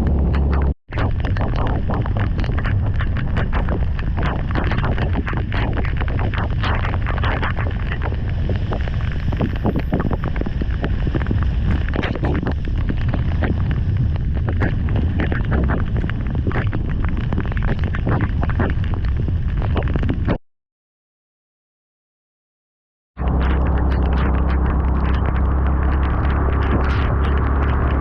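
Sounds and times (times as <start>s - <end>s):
wind rumbling on microphone: 0.0s - 20.4s, 23.2s - 28.0s
heavy rain pouring: 2.2s - 19.3s, 23.2s - 28.0s.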